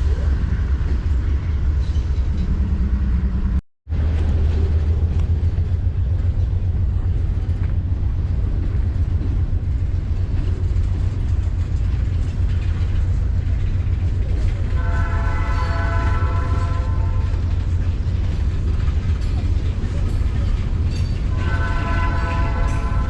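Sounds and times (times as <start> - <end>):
diesel locomotive rumble: 0.0 - 23.0
multi-note locomotive horn: 14.7 - 17.5, 21.3 - 23.0.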